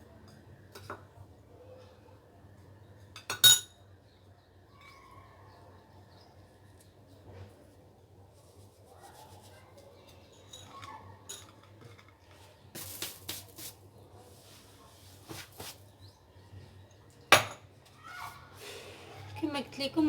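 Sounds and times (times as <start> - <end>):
utensils and dishes clinking: 10.2 - 12.2.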